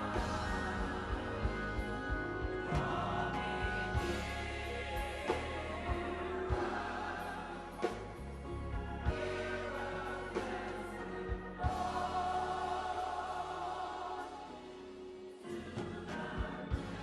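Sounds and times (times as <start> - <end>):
low beats: 0.0 - 14.7
gospel choir singing: 0.0 - 17.0.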